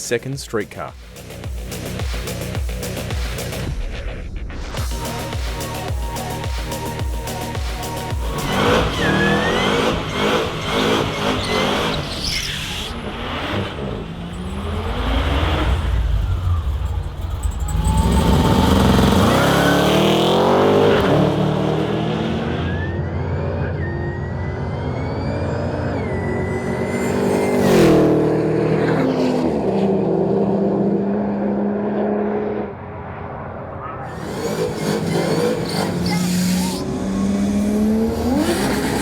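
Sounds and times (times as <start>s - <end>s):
car engine accelerating hard: 4.8s - 39.0s
thin rising whine: 21.8s - 27.9s.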